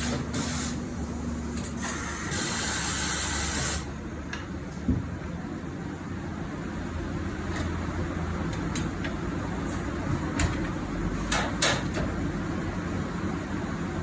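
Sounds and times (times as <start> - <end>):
compressed air hissing: 0.0 - 3.9.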